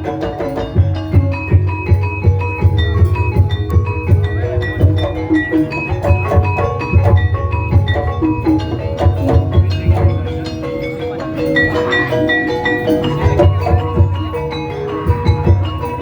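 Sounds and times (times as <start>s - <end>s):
gamelan tuned percussion melody: 0.0s - 16.0s
low drum strokes: 0.6s - 12.3s.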